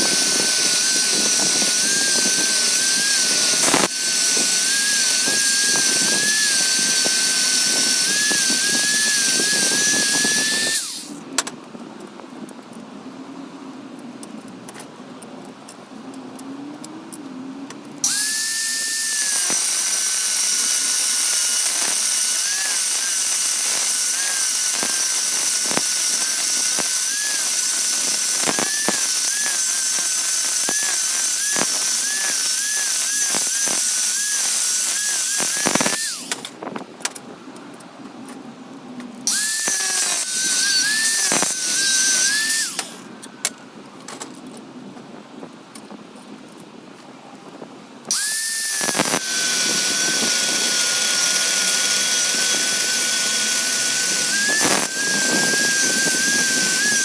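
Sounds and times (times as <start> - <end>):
belt grinder whining: 0.0 - 11.2, 18.0 - 36.6, 39.2 - 43.1, 48.1 - 57.0
grinder belt hissing: 0.0 - 11.2, 18.0 - 36.6, 39.3 - 43.1, 48.1 - 57.0.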